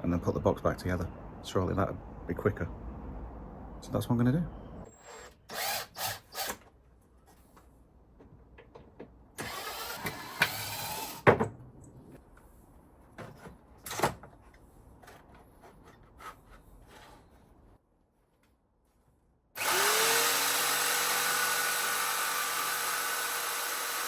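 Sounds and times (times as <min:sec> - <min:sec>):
power tool bursts: 0:09.4 - 0:11.3, 0:19.6 - 0:24.0.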